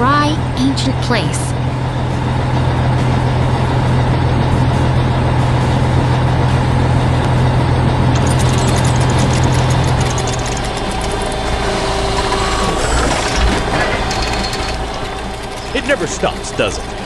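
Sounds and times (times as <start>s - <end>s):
heavy machine engine humming: 0.0s - 17.0s
fast ratchet-like clicking: 8.1s - 17.0s.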